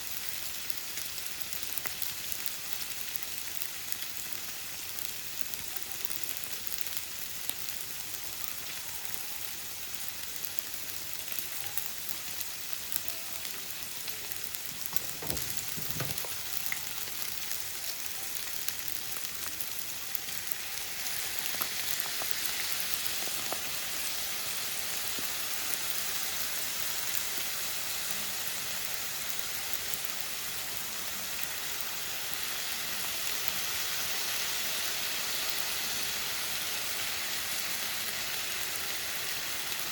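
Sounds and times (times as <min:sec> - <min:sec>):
noodles sizzling in a pan: 0:00.0 - 0:39.9
low knocks: 0:14.8 - 0:16.3.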